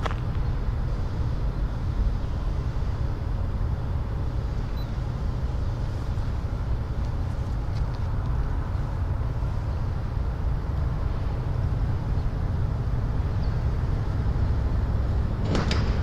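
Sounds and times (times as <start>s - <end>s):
freight train rumbling past: 0.0s - 16.0s.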